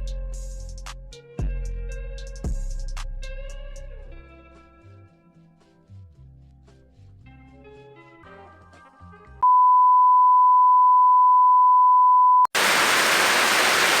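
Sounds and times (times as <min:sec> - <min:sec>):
soft guitar music: 0:00.0 - 0:09.4
static hiss: 0:12.6 - 0:14.0.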